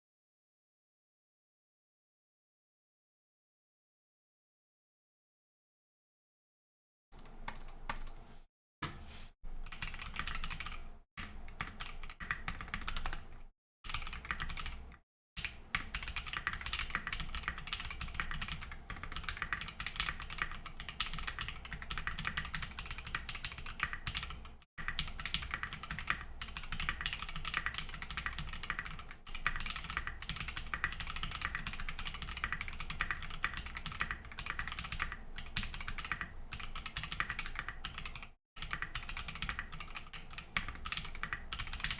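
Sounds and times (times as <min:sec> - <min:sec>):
mechanical keyboard typing: 0:07.2 - 0:08.2, 0:09.6 - 0:41.9.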